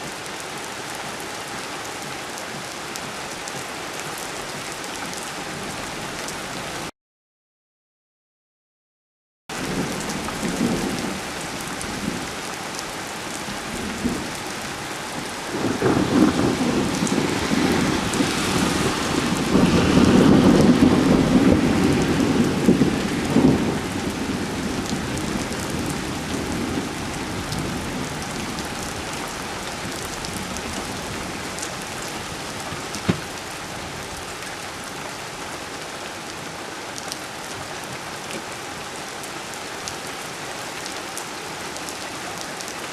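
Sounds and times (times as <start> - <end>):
steady rain: 0.0 - 6.9, 9.5 - 42.9
rolling thunder rumble: 15.1 - 34.3.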